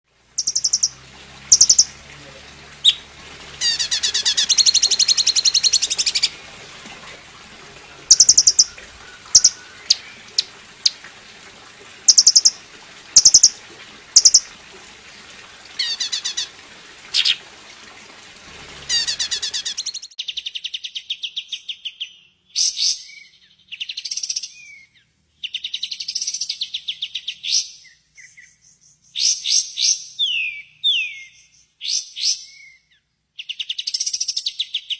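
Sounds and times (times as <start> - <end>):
bird chirping and trilling: 0.4 - 2.1, 2.8 - 6.6, 7.8 - 11.0, 12.1 - 12.6, 13.2 - 13.6, 14.2 - 14.5, 15.8 - 17.4, 18.9 - 34.9.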